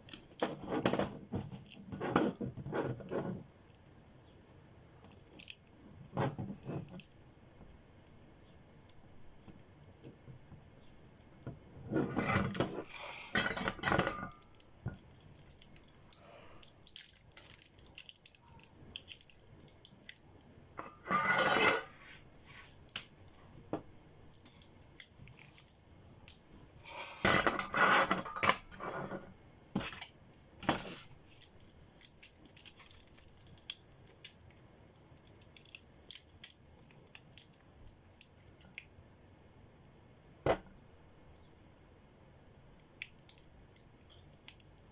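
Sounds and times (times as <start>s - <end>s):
clatter of small objects: 11.9s - 21.9s, 26.8s - 38.7s
small hard objects clicking: 14.3s - 20.5s.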